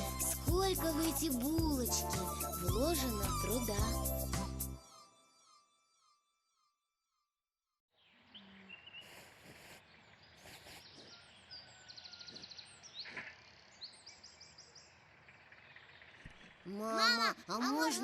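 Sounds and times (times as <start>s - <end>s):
small birds chirping: 7.9s - 17.0s.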